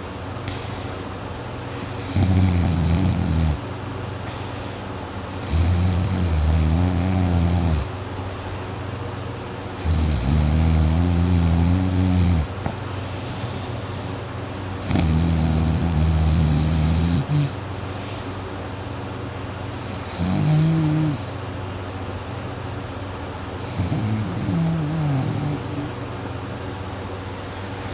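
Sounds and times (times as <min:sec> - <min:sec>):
steady low hum: 0:00.0 - 0:27.9
man snoring loudly: 0:01.9 - 0:03.6, 0:05.4 - 0:07.9, 0:09.8 - 0:12.5, 0:14.8 - 0:17.6, 0:19.9 - 0:21.3, 0:23.7 - 0:26.0.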